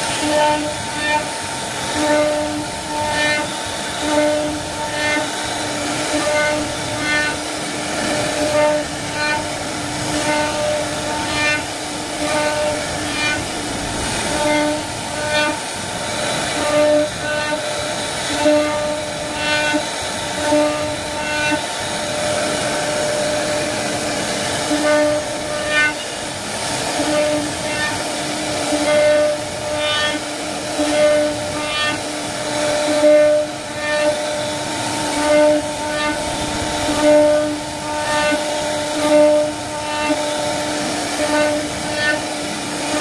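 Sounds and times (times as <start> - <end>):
router machine whine: 0.0 - 43.0.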